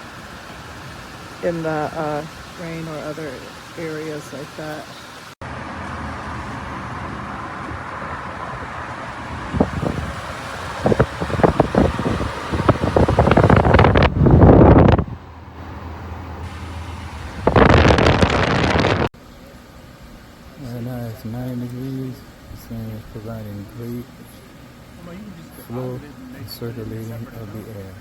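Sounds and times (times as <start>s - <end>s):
wind buffeting microphone: 6.1s - 19.1s
fan air rushing: 6.2s - 28.0s.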